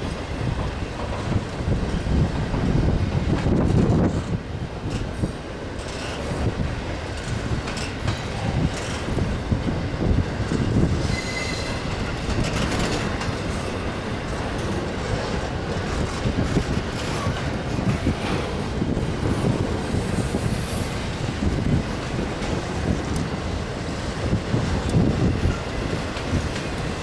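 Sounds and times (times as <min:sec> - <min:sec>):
train wheels rumbling on rail: 0:00.0 - 0:27.0
wheels clacking: 0:00.1 - 0:23.5
high wheel squeal: 0:10.8 - 0:12.4.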